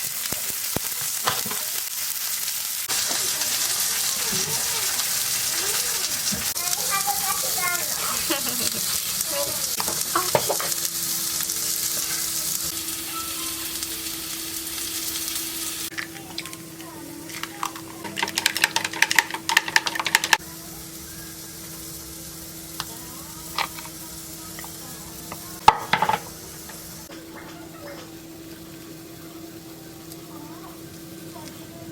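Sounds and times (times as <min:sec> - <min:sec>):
food sizzling in a frying pan: 0:00.0 - 0:31.9
utensil clatter: 0:15.9 - 0:20.5, 0:23.5 - 0:28.2
utensil stirring clicks and scrapes: 0:17.2 - 0:20.4.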